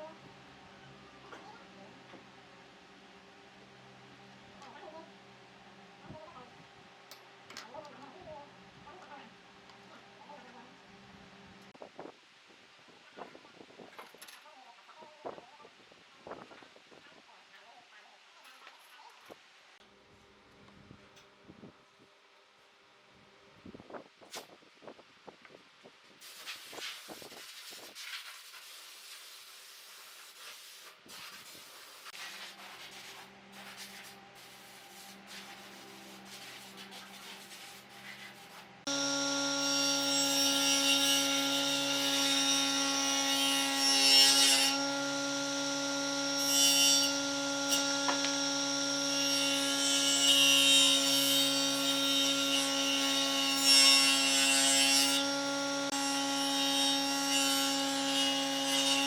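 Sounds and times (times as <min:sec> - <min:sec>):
faint workshop sounds: 0:00.0 - 0:59.0
power tool cutting wood: 0:38.8 - 0:59.0.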